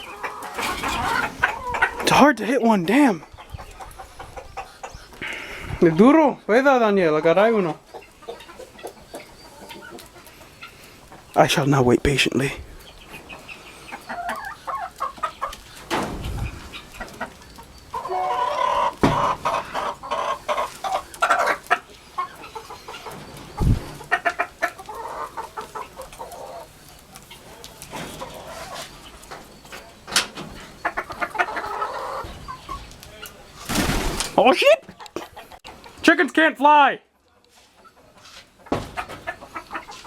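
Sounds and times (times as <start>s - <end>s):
chickens clucking: 0.0s - 40.0s
low thumps: 23.6s - 24.0s.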